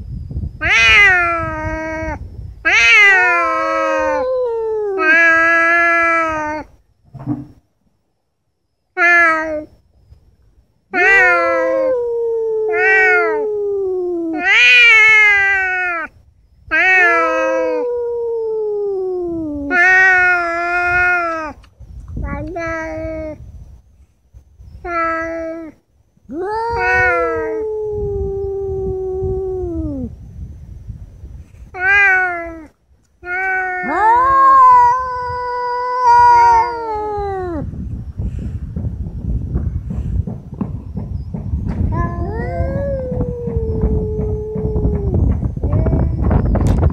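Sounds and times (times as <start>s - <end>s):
cats yowling: 0.6s - 6.7s, 9.0s - 9.8s, 10.9s - 16.1s, 16.7s - 21.6s, 22.2s - 23.4s, 24.8s - 30.2s, 31.7s - 37.7s, 41.7s - 46.8s.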